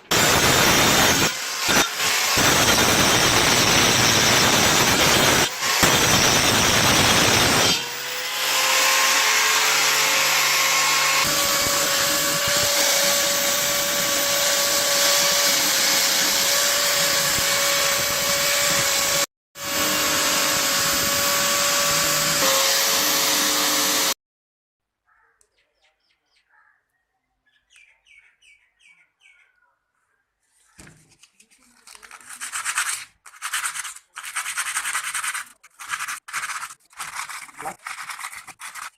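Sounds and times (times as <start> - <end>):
power tool whining: 0.0 - 24.2
faint bird chirps: 25.1 - 30.8.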